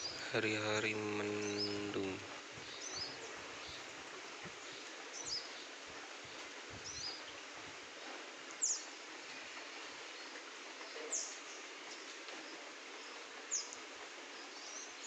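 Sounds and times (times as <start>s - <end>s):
light rain hiss: 0.0s - 15.0s
wind: 0.0s - 15.0s
small bird chirping: 2.6s - 4.0s, 4.6s - 7.5s, 8.6s - 9.0s, 10.2s - 15.0s.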